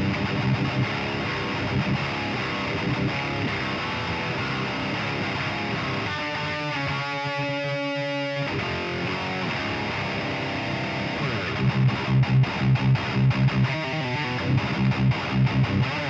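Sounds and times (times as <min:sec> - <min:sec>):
distorted electric guitar metal riffs: 0:00.0 - 0:16.0.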